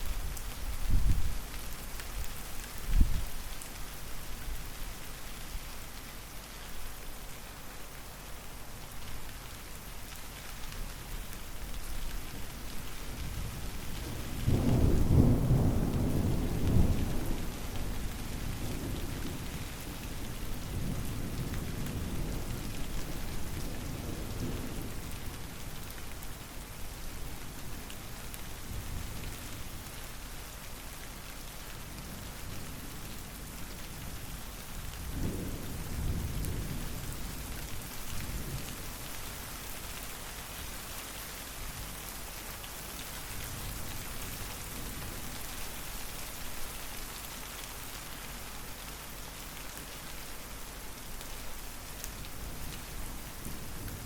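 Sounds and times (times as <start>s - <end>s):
rain falling: 0.0s - 54.0s
thunder rumbling: 13.0s - 25.3s, 35.0s - 39.1s.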